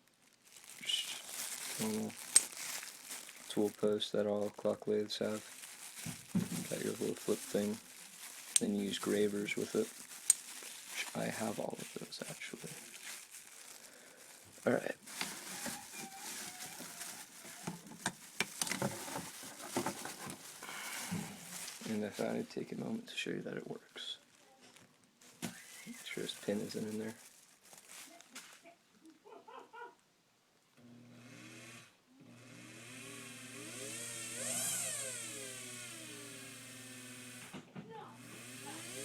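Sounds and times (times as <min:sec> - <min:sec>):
small tools clicking and rustling: 0:05.4 - 0:11.1, 0:15.2 - 0:21.9
electric motor whining: 0:30.9 - 0:37.5, 0:38.2 - 0:39.0.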